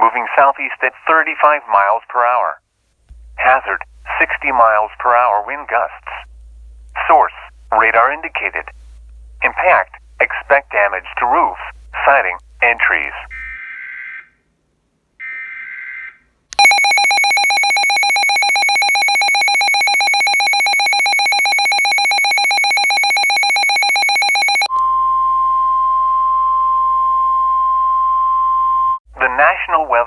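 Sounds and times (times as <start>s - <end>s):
steady warning alarm tone: 3.2s - 14.3s, 16.6s - 25.4s.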